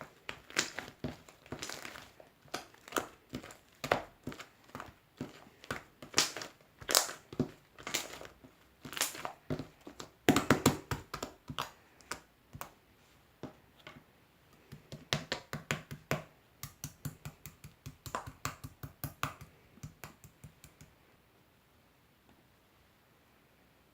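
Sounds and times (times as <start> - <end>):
slime crackling and popping: 0.0 - 12.8.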